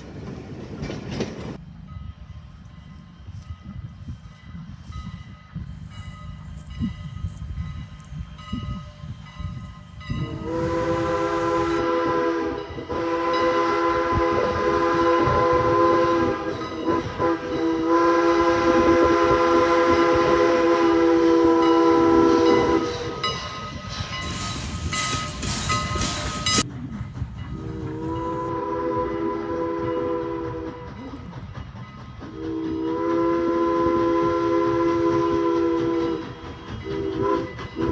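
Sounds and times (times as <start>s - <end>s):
moving train rumble: 0.0s - 37.9s
steam locomotive whistle blasts: 10.0s - 26.6s, 27.5s - 31.1s, 32.2s - 37.9s.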